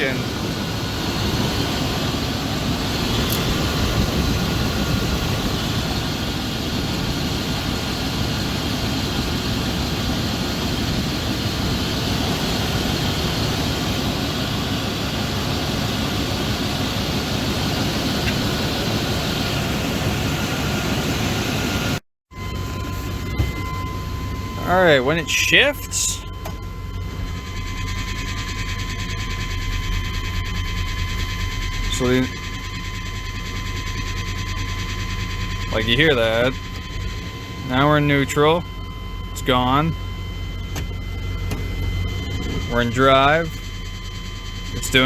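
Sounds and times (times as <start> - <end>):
engine idling: 22.4 - 45.0.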